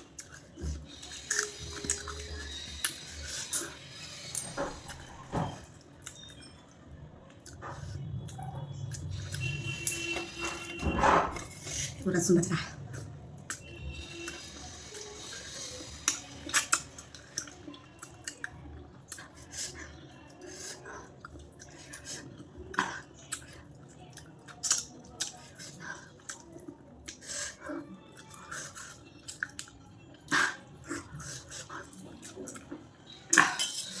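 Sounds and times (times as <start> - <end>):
person chewing food: 0.0 - 5.1, 16.0 - 34.0.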